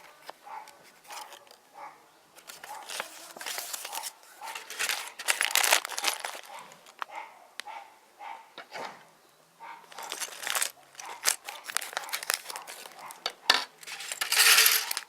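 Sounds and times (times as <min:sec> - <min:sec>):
plastic packaging crinkling: 0:00.0 - 0:01.6, 0:02.4 - 0:07.1, 0:09.9 - 0:15.0.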